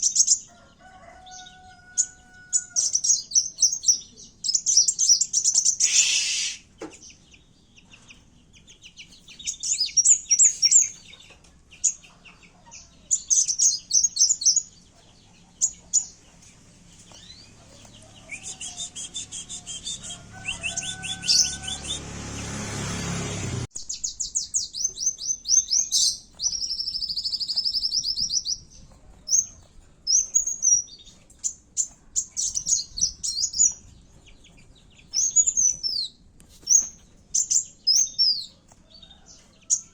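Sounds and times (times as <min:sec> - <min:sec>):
birds twittering and chirping: 0:00.0 - 0:39.9
rushing noise: 0:18.3 - 0:23.7.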